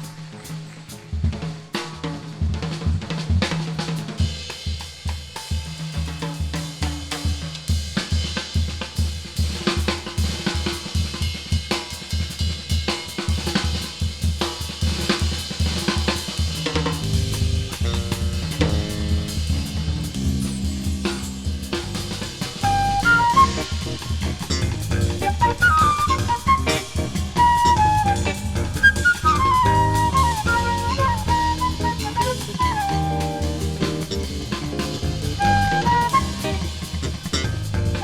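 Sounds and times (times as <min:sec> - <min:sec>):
hi-hat and cymbals: 0:04.4 - 0:23.0
bass drum: 0:16.9 - 0:38.0.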